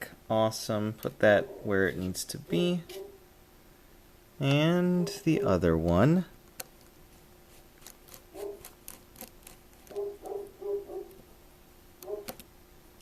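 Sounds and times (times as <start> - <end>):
tiny screws and screwdriver clicking: 7.8 - 10.1, 12.0 - 12.5.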